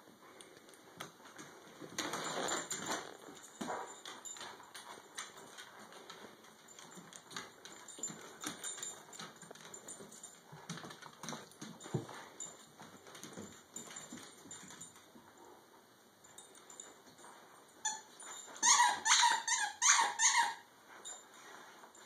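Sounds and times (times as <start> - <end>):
dogs scuffling: 0.3 - 15.6
high-pitched squeaks: 17.8 - 20.7.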